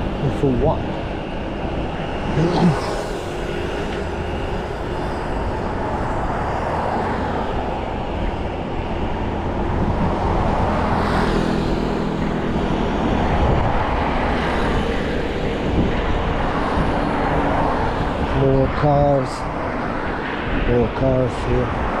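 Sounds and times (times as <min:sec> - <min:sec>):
passing vehicles rushing: 0:00.0 - 0:22.0
vehicle passing by: 0:01.4 - 0:15.9.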